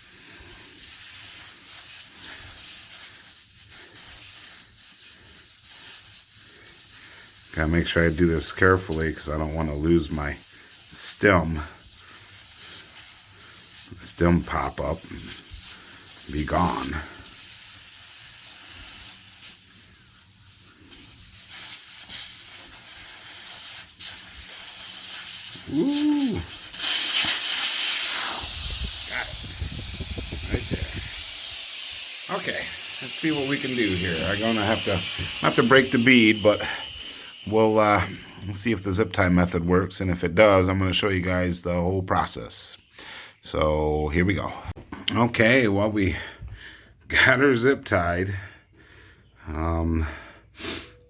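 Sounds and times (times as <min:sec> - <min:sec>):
air hissing from tire valve: 0:00.0 - 0:39.2, 0:50.4 - 0:51.0.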